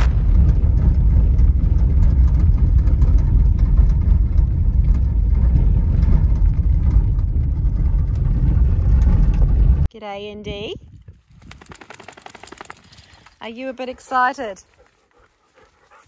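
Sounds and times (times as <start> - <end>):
low rumble: 0.0 - 11.1.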